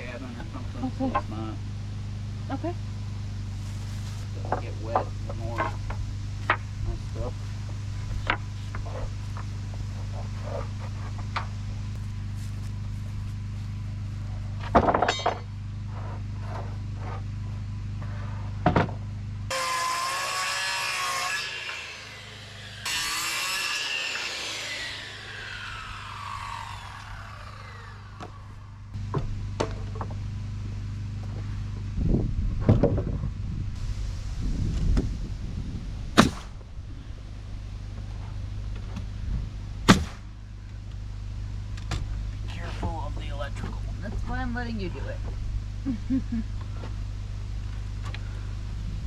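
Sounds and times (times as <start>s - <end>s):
steady low hum: 0.0s - 20.0s, 20.7s - 49.0s
power saw cutting wood: 3.3s - 13.8s, 19.5s - 29.0s.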